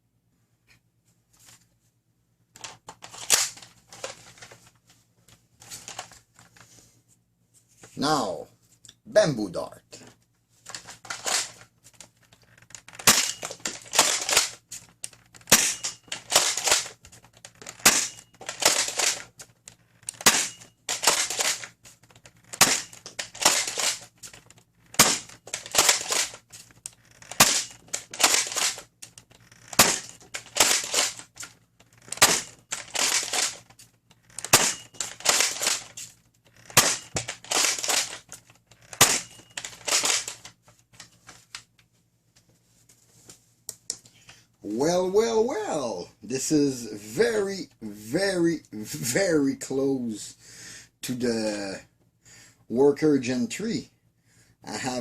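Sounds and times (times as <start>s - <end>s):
blaster priming slide rattle: 10.7s - 11.6s, 12.5s - 19.4s, 20.0s - 33.7s, 34.3s - 40.5s
foam dart blaster shots: 15.5s - 16.6s, 17.8s - 19.0s, 20.2s - 21.3s, 22.6s - 23.8s, 25.0s - 26.2s, 27.4s - 28.6s, 29.7s - 30.9s, 34.5s - 34.8s, 39.0s - 39.4s.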